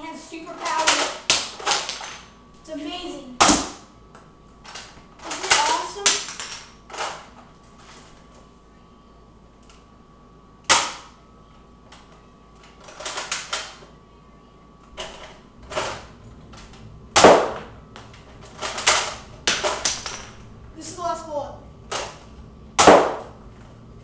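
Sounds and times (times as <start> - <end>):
foam dart blaster popping: 22.8 - 23.3.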